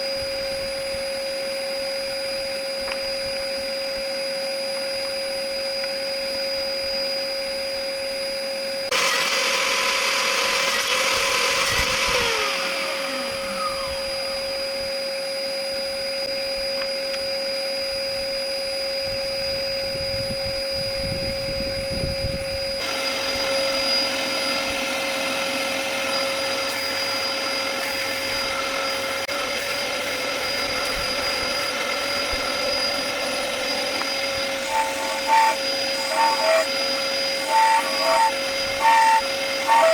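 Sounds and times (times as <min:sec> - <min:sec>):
table saw motor whine: 0:00.0 - 0:39.9
saw blade rasping through wood: 0:22.8 - 0:39.9.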